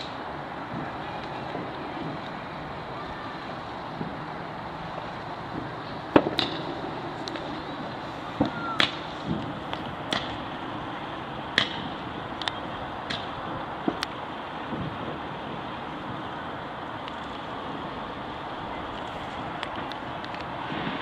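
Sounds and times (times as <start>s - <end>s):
distant fireworks bangs: 0.0s - 16.4s
steady background hiss: 0.0s - 21.0s.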